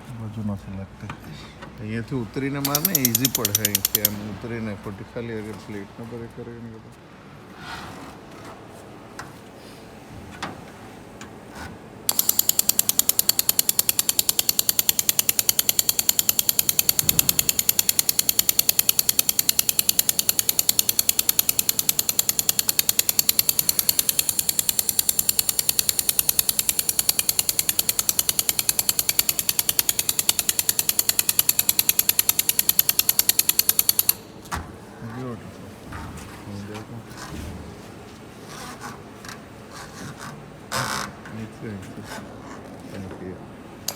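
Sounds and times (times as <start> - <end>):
laser welder pulsing: 2.6 - 4.3, 12.1 - 34.4.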